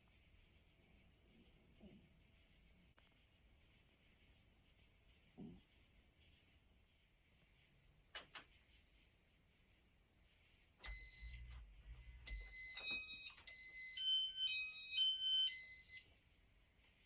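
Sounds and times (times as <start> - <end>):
fan control click: 8.1 - 8.5
electronic beeps: 12.3 - 16.1.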